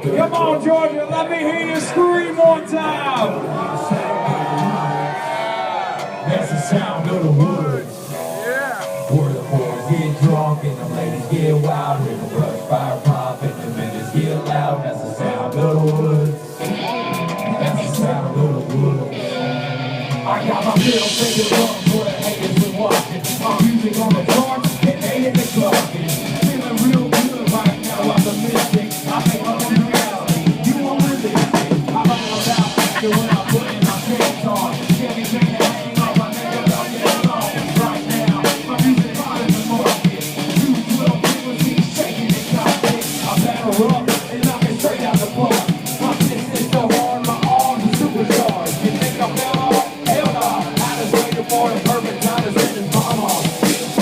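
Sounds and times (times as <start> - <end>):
country-rap song over loudspeakers: 0.0 - 54.0
drum-kit beat: 6.0 - 14.8, 20.0 - 54.0.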